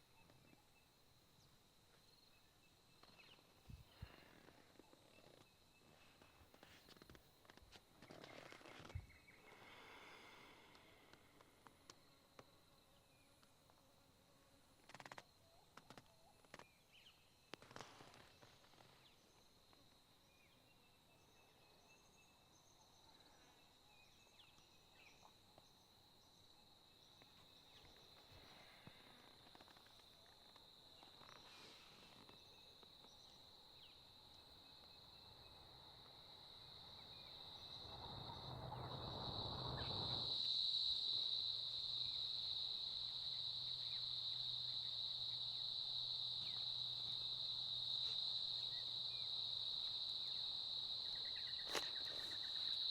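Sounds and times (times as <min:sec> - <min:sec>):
insects chirring: 0:21.3 - 0:52.9.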